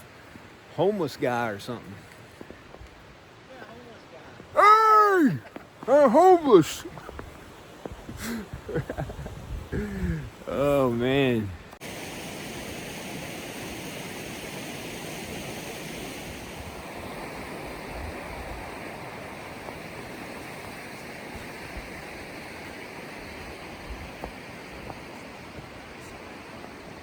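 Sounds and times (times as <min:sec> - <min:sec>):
river rushing: 0:03.3 - 0:08.5.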